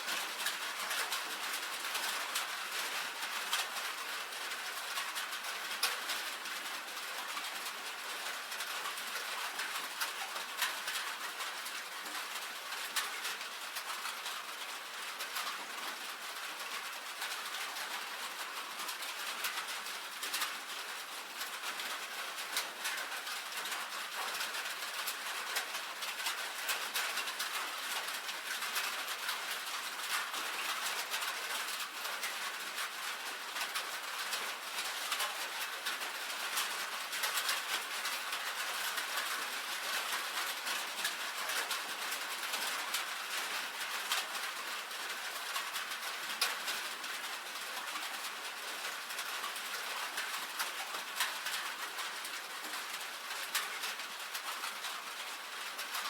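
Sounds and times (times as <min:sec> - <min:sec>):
rain on a tin roof: 0:00.0 - 0:56.0.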